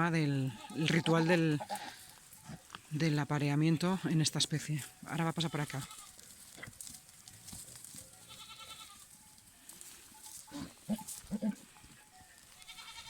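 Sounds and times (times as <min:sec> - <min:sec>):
goats bleating: 0:00.0 - 0:04.4, 0:05.1 - 0:06.8, 0:08.0 - 0:13.0.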